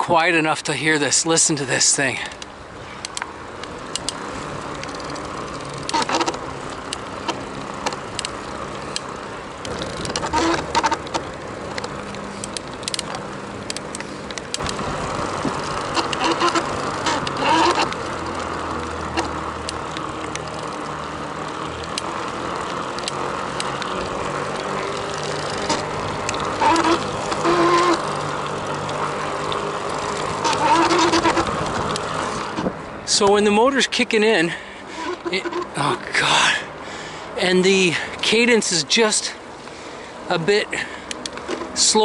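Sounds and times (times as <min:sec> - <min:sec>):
e-bike motor hum and whine: 0:00.0 - 0:42.0
motor clicks: 0:02.2 - 0:32.8, 0:39.6 - 0:42.0.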